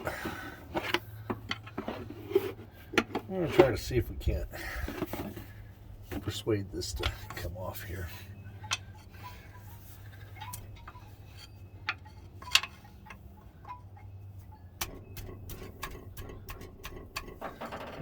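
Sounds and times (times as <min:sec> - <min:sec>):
metal tools tapping on engine: 0:00.7 - 0:01.9, 0:06.1 - 0:18.0.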